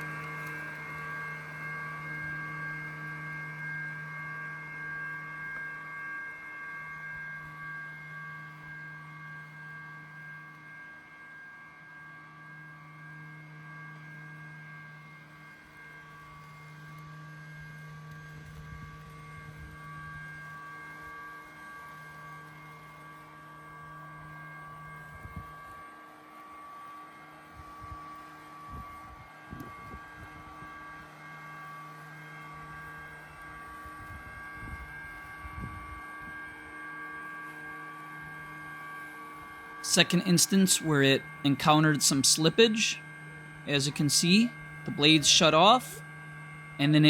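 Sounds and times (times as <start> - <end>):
robot lawn mower motors humming: 0.0 - 10.2
thin motor whine: 0.0 - 47.0.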